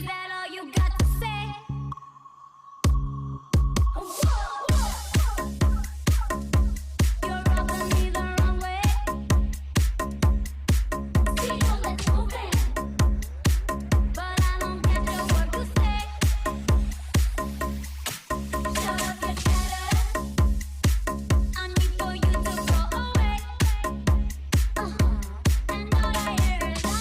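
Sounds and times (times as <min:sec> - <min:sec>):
electronic dance music: 0:00.0 - 0:27.0
heavy bass drum beat: 0:00.8 - 0:01.3, 0:02.9 - 0:27.0
sustained bass line: 0:01.0 - 0:02.0, 0:02.9 - 0:03.9, 0:04.7 - 0:27.0.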